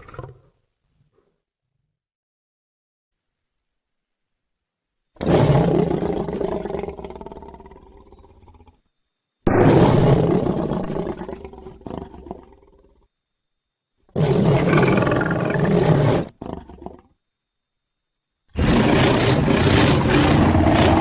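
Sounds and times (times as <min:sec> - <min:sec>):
creature roars: 0:09.5 - 0:12.7, 0:14.2 - 0:17.0, 0:18.6 - 0:21.0.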